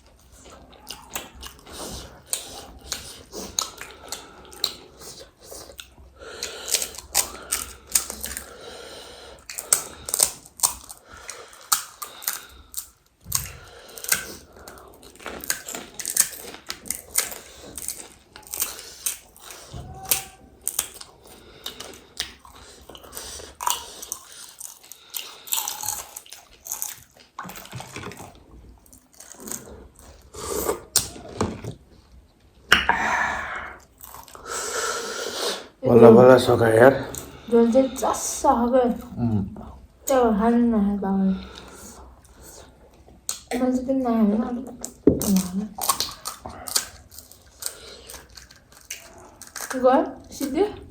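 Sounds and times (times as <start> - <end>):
crisp shells crunching chewed: 0.0 - 8.6, 9.4 - 31.8, 33.8 - 34.5, 44.8 - 50.9.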